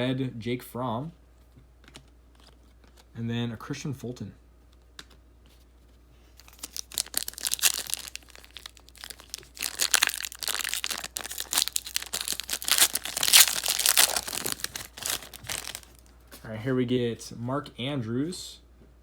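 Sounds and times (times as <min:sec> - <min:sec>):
wrapper tearing and crinkling: 0:06.4 - 0:16.1.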